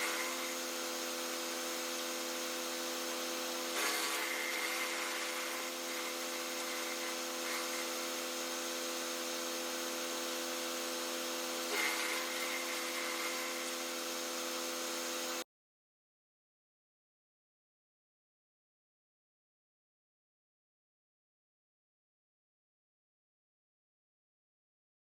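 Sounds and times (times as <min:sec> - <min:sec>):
wood chipper grinding branches: 0:00.0 - 0:15.4.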